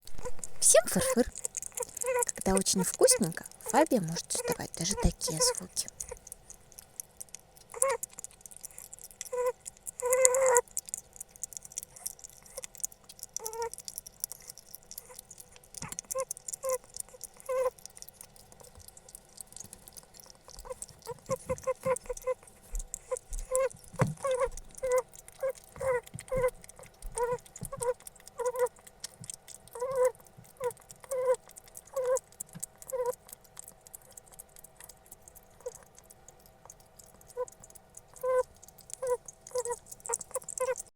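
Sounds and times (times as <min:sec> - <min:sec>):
hedgehog squeaky chirps: 0:00.1 - 0:06.4, 0:07.7 - 0:08.1, 0:08.7 - 0:10.6, 0:13.4 - 0:13.8, 0:15.8 - 0:16.8, 0:17.4 - 0:17.8, 0:20.5 - 0:26.5, 0:27.1 - 0:28.7, 0:29.7 - 0:32.2, 0:32.8 - 0:33.2, 0:35.6 - 0:35.9, 0:37.3 - 0:40.9.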